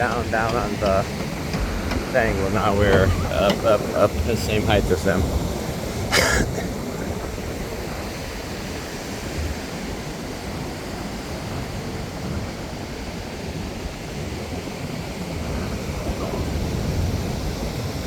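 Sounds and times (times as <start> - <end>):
wind buffeting microphone: 0.0 - 10.0
ocean surf washing: 0.0 - 18.0.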